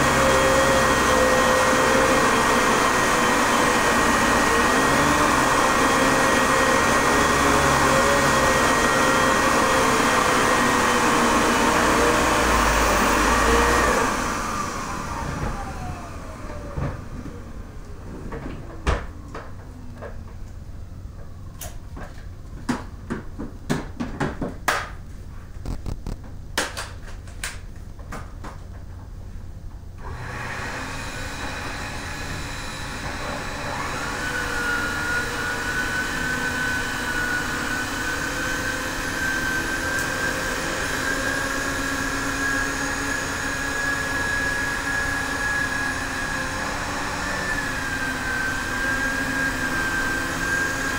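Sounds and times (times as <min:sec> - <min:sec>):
vacuum cleaner running with whistle: 0:00.0 - 0:19.5, 0:30.0 - 0:50.9.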